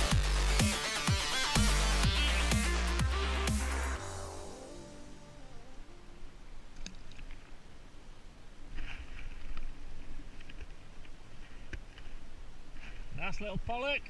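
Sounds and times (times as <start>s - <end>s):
background music: 0.0s - 6.7s.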